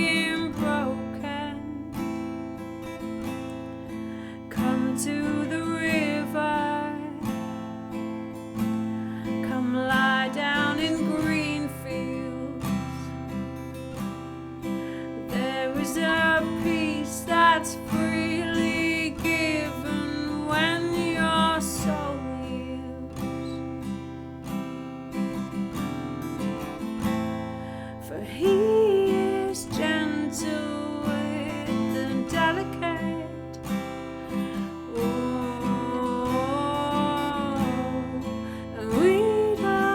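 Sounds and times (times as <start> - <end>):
strummed acoustic guitar chords: 0.0 - 39.9.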